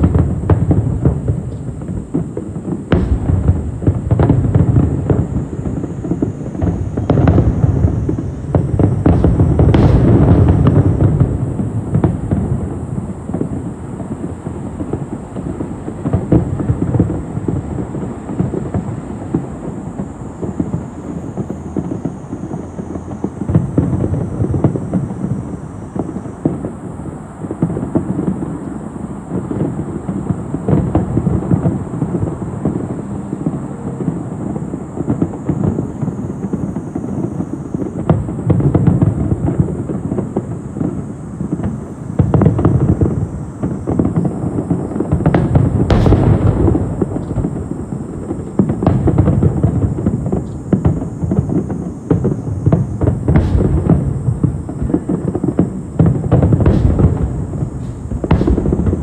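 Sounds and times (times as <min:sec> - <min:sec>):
fireworks booming: 0:00.0 - 0:26.8, 0:35.0 - 0:59.0
fireworks crackling: 0:00.0 - 0:59.0.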